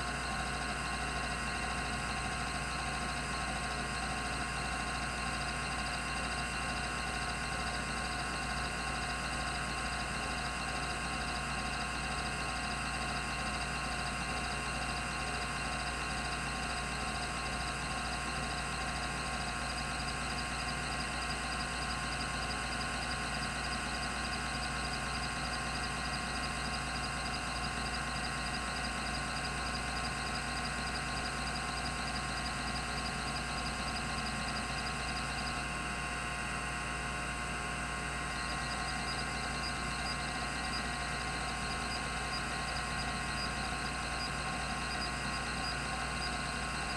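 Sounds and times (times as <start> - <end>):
hard drive hum and whine: 0.0 - 46.9
fast high-pitched pulsing: 24.4 - 35.6, 38.3 - 46.9.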